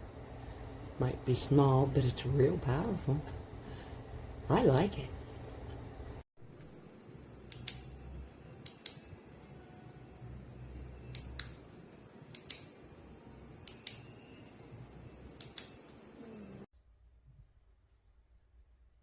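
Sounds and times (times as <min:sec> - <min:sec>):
low steady hum: 0:00.0 - 0:16.7
sharp double clicks: 0:07.5 - 0:07.9, 0:12.3 - 0:12.7.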